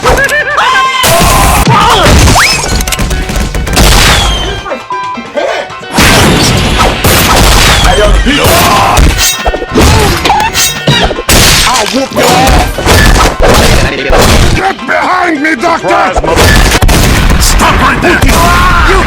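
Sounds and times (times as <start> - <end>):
music: 0.0 - 19.0
glass shattering: 6.0 - 14.5.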